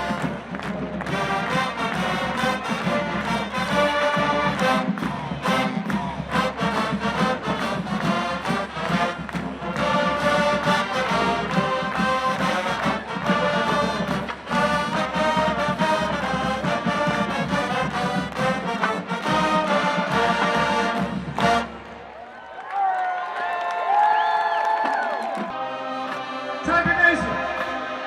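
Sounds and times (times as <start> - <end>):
steady drum beat: 0.0 - 21.7
marching band brass: 0.0 - 22.4, 24.9 - 28.0.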